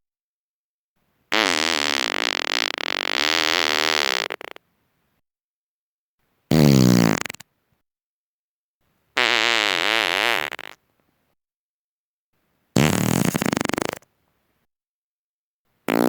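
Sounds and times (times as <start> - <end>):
person farting: 1.3 - 4.6, 6.5 - 7.4, 9.2 - 10.8, 12.8 - 14.1.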